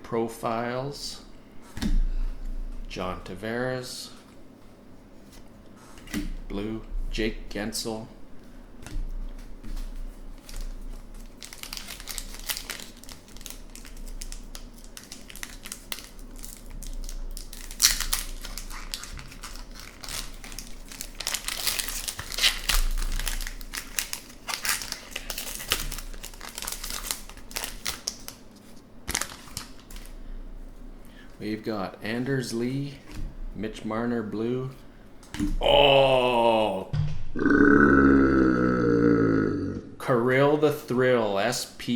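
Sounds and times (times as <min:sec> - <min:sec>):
wrapper crinkling and tearing: 0:10.3 - 0:30.2.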